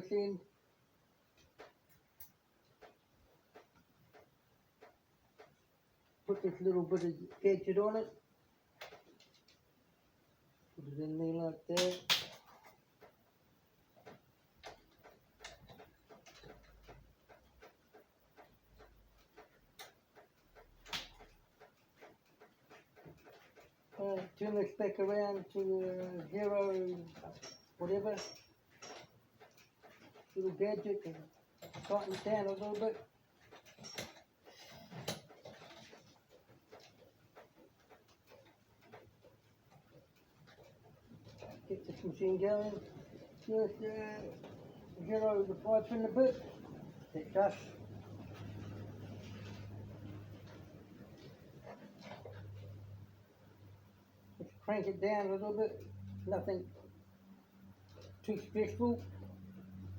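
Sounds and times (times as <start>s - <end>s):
flaring tool clicks and taps: 13.9s - 46.9s.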